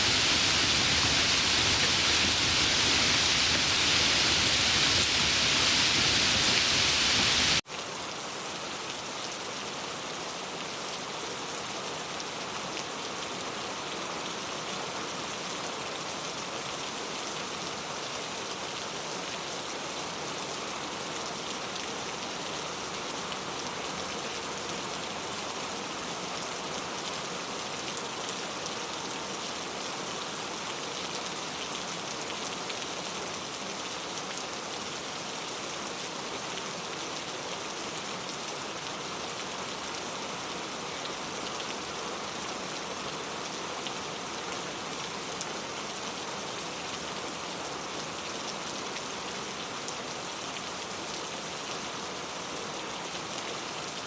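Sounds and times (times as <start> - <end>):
rain pattering on foliage: 0.0 - 7.6.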